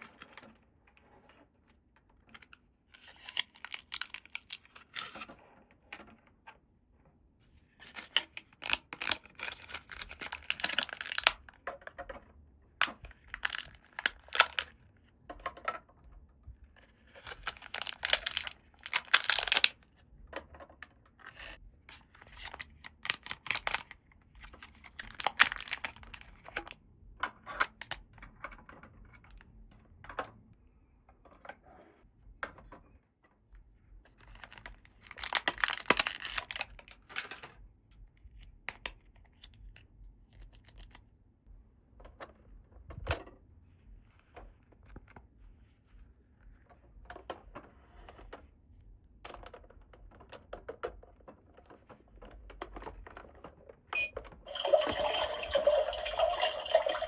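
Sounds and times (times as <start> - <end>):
packaging tearing and crinkling: 3.2 - 4.5, 8.6 - 11.4, 13.4 - 14.7, 17.3 - 19.7, 22.4 - 23.9, 25.0 - 25.9, 35.0 - 37.3.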